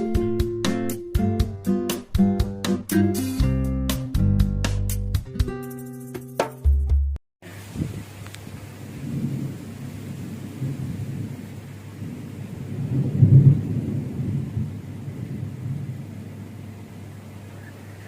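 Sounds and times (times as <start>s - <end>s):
strong gusty wind: 7.5s - 16.3s.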